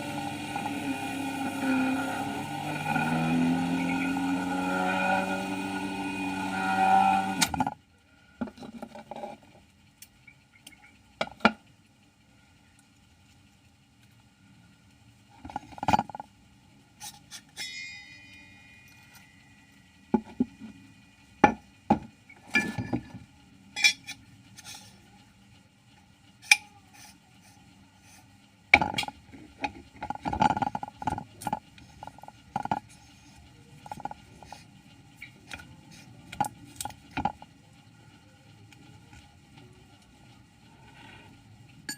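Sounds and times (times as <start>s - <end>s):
faint machine hum: 0.0s - 41.9s
ringing metal strike: 17.6s - 21.1s.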